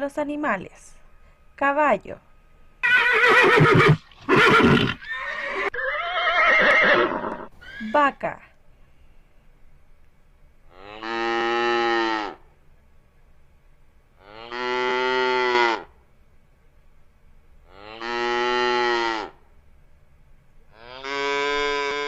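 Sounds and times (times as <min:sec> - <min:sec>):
cow mooing: 0:17.7 - 0:19.4.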